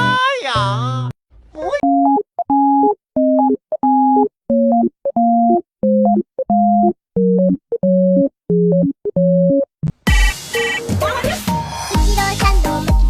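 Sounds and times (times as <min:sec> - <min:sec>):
electronic beeping tune: 0:01.8 - 0:10.9.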